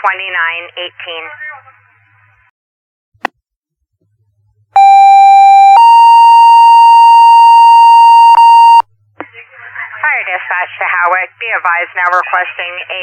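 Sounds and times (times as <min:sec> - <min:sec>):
two-tone paging tones: 0:04.8 - 0:08.8.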